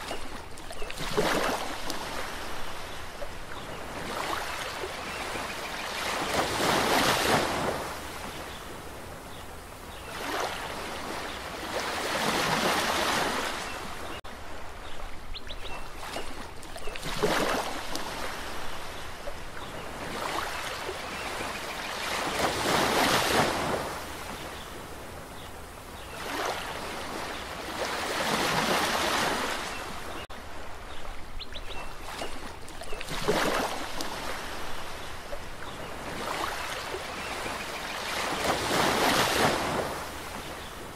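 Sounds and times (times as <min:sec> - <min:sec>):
sea waves breaking: 0:00.0 - 0:40.9.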